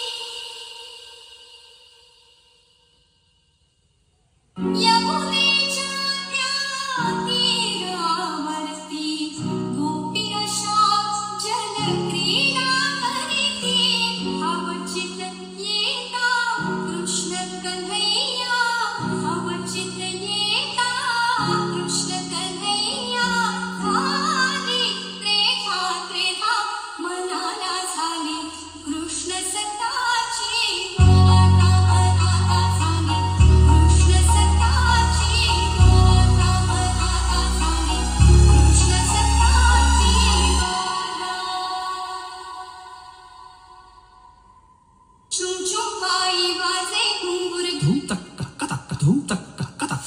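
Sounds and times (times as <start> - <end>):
woman singing: 0.0 - 2.4, 4.6 - 44.2, 45.3 - 48.8
sustained low notes: 31.0 - 40.7.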